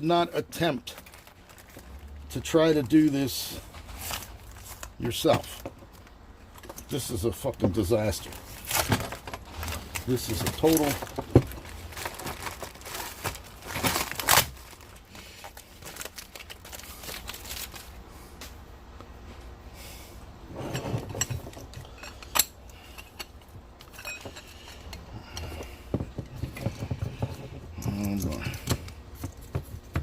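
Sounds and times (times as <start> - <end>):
packaging crinkling: 0.9 - 3.2, 8.0 - 18.0
small metal parts clinking: 8.1 - 13.3, 20.7 - 29.4.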